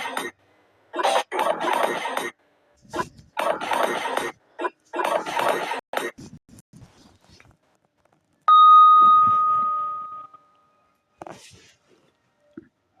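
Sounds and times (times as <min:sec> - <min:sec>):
timer chime ding: 0:08.5 - 0:10.6.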